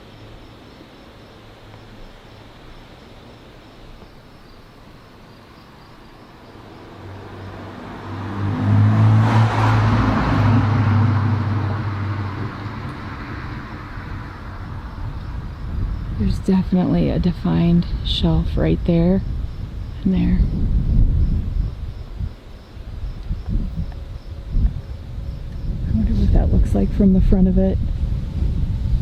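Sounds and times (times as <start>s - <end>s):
vehicle driving past: 6.4s - 16.3s.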